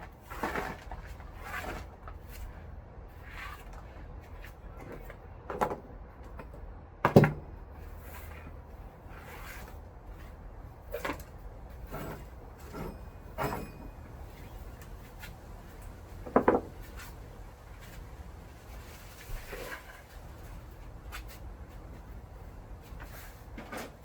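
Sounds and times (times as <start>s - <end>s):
objects knocking and clicking: 16.2s - 16.8s.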